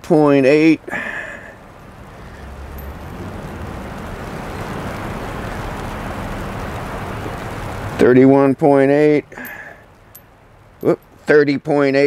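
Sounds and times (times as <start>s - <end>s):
passing vehicle rushing: 1.2s - 8.0s.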